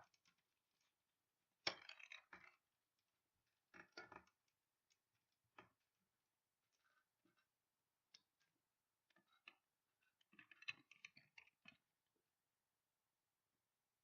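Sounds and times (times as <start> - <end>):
small hard objects clicking: 1.6 - 2.6, 10.2 - 11.8.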